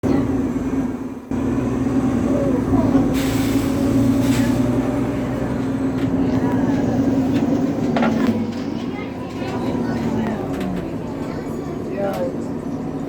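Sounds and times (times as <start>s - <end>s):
bus engine droning hum: 0.0s - 13.0s
air hiss: 3.1s - 4.8s.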